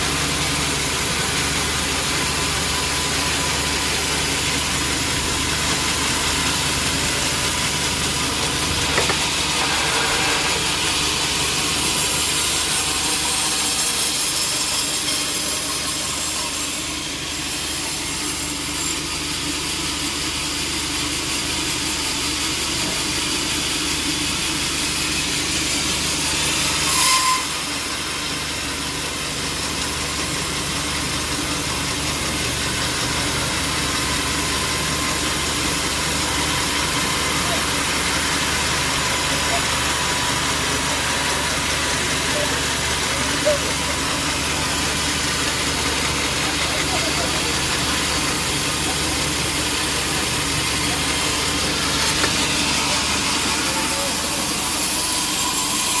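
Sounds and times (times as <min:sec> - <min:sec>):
sawmill saw cutting wood: 0:00.0 - 0:56.0
saw squeal: 0:08.9 - 0:19.1, 0:26.0 - 0:28.2, 0:50.7 - 0:56.0.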